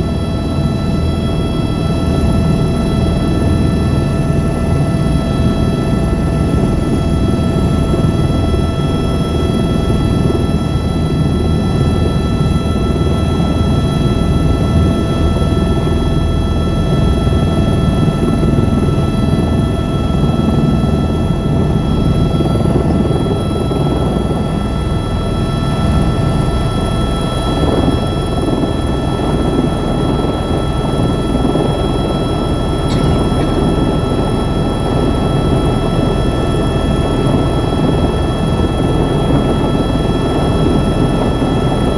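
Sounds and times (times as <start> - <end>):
helicopter rotor and engine: 0.0 - 41.9
turbine whine: 0.0 - 41.9.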